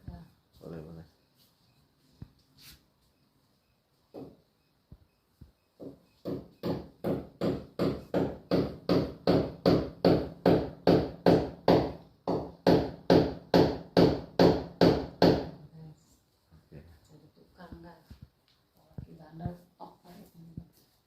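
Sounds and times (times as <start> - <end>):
hammer driving a nail: 5.8 - 15.6.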